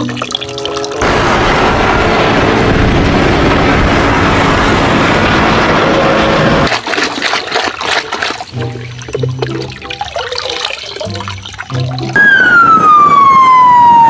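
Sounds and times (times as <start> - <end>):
water running and splashing: 0.0 - 1.0, 6.7 - 12.2.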